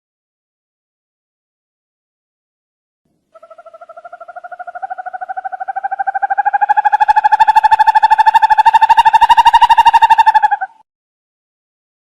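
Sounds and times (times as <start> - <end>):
owl trilling: 3.4 - 10.8.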